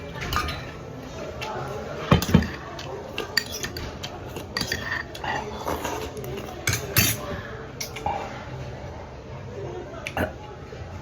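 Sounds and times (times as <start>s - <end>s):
cutlery clinking against a bowl: 0.0s - 8.1s.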